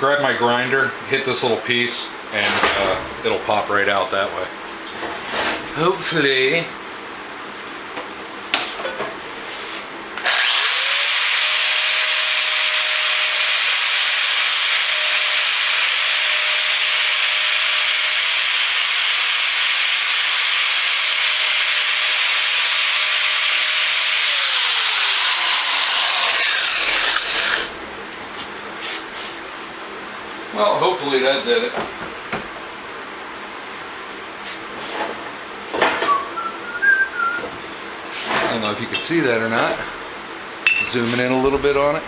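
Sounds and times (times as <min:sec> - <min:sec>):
angle grinder grinding metal: 0:10.2 - 0:27.8.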